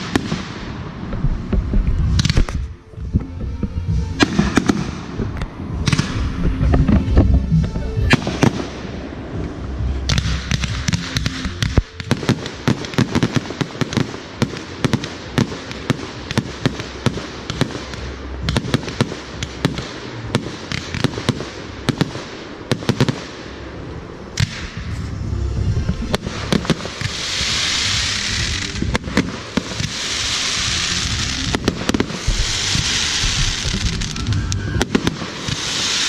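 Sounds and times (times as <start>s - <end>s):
fireworks bangs and shell bursts: 0.0s - 2.7s, 3.9s - 25.0s, 26.0s - 36.0s.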